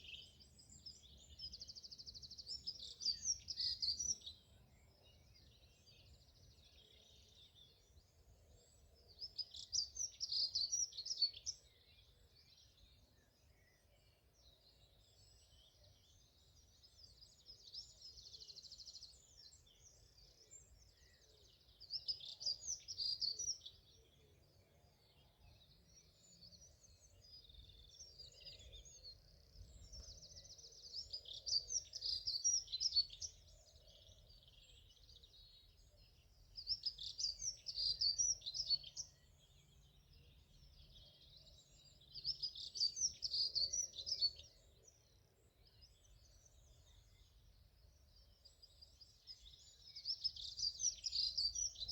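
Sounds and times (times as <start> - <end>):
faint birdsong: 0.0 - 51.9
songbird twittering: 25.0 - 51.9.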